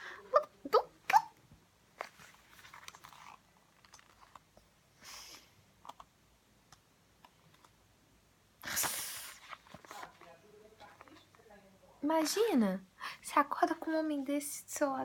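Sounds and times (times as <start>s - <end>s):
page rustling: 2.0s - 4.7s, 8.8s - 11.4s.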